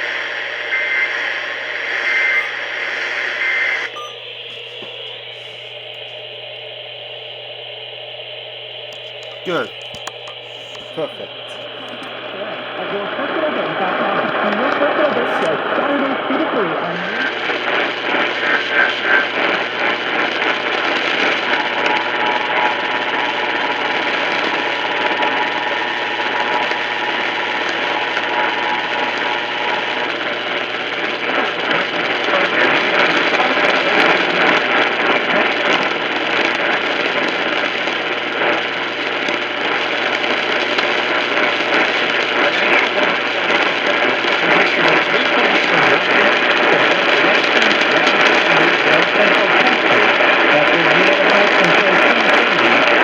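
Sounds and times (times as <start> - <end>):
radio static hiss and crackle: 0.0 - 53.0
faint steady tone: 0.1 - 7.5.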